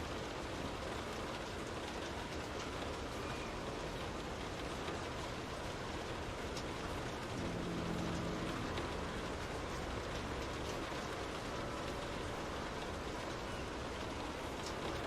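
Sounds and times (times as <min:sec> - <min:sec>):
rain on a window pane: 0:00.0 - 0:15.0
low hum with overtones: 0:07.3 - 0:11.9.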